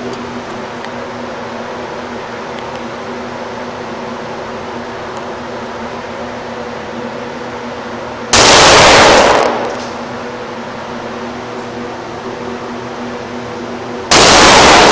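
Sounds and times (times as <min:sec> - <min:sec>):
steady background hum: 0:00.0 - 0:14.9
pistol gunshot: 0:08.4 - 0:10.0, 0:14.1 - 0:14.9.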